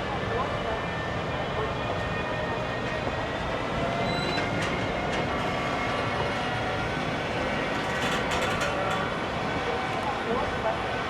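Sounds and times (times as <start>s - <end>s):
train rumbling: 2.9s - 11.0s
wheels clicking over rail joints: 7.7s - 9.2s.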